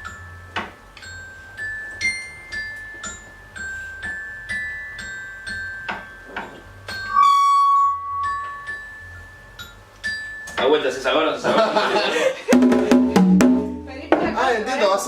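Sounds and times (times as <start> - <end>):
bell-like struck notes: 4.4 - 10.8
loud steady high tone: 6.9 - 9.8.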